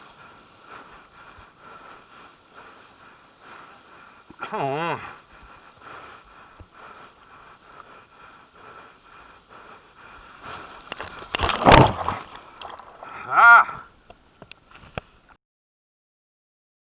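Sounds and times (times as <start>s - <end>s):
man making odd vocal noises: 4.3s - 5.2s, 13.0s - 13.9s.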